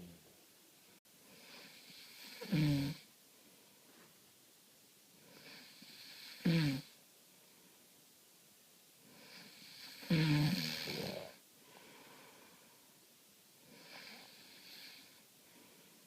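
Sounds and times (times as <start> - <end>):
quiet breath: 1.0 - 4.3, 5.1 - 8.0, 9.0 - 16.0
person snoring: 1.4 - 3.0, 5.3 - 6.9, 9.2 - 11.4.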